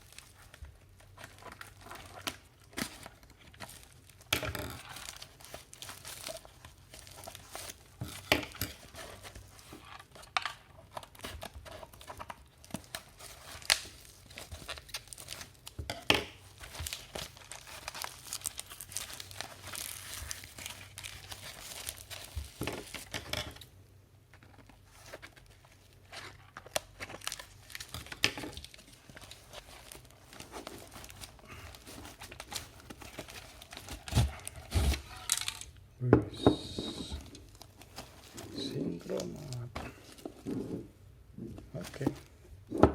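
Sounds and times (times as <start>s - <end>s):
packaging crinkling and tearing: 0.0s - 35.8s, 36.8s - 40.5s.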